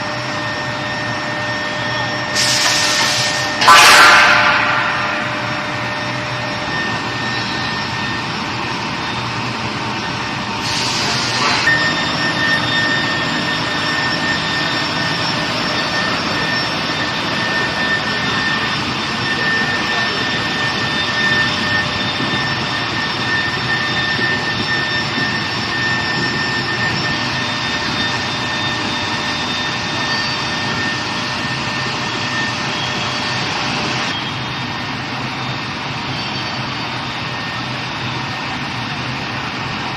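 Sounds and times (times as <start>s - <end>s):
high machine whines: 0.0s - 39.9s
industrial machine hissing: 1.3s - 39.2s.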